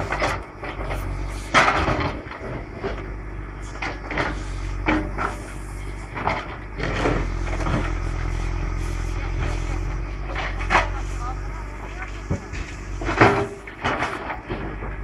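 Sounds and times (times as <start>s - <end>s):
digging knocks and scrapes: 0.0s - 11.2s
diesel engine running: 0.0s - 15.0s.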